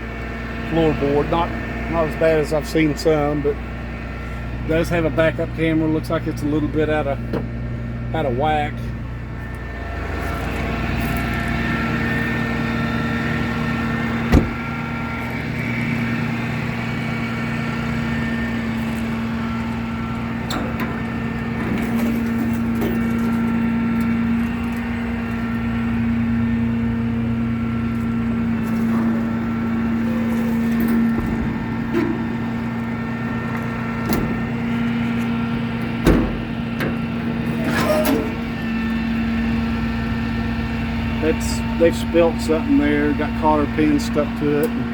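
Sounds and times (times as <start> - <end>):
truck engine idling: 0.0 - 44.9
sharp knocks: 14.3 - 14.7.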